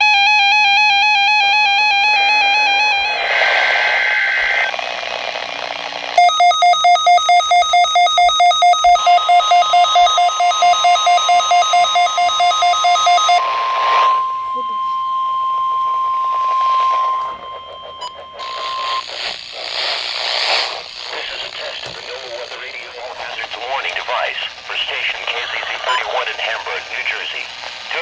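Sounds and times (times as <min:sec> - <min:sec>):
steady warning alarm tone: 0:00.0 - 0:03.3, 0:06.2 - 0:19.7
wavering buzzy alarm tone: 0:00.0 - 0:03.6, 0:06.2 - 0:20.2
rapid pulsed beeping: 0:06.2 - 0:19.7.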